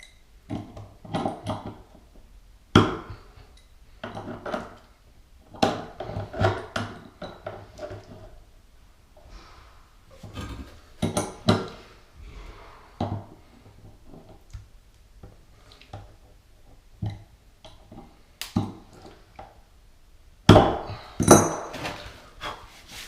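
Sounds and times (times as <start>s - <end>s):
hard parts and tool knocking: 20.5s - 22.0s.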